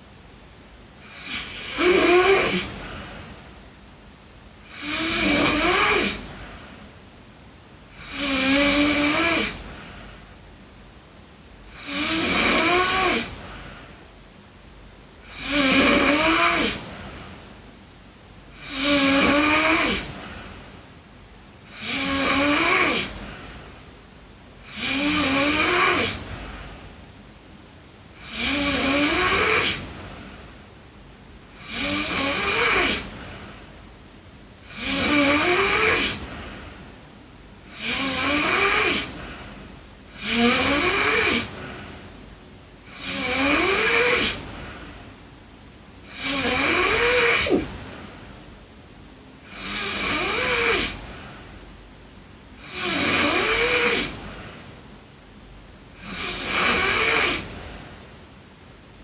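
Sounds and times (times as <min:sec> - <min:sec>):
girl snoring: 0:01.0 - 0:03.5, 0:04.6 - 0:06.8, 0:07.9 - 0:10.3, 0:11.7 - 0:14.0, 0:15.2 - 0:17.4, 0:18.5 - 0:20.7, 0:21.7 - 0:23.8, 0:24.6 - 0:26.9, 0:28.1 - 0:30.6, 0:31.5 - 0:33.8, 0:34.6 - 0:37.0, 0:37.7 - 0:42.1, 0:42.8 - 0:45.1, 0:46.0 - 0:48.0, 0:49.4 - 0:51.5, 0:52.6 - 0:54.6, 0:55.9 - 0:57.9.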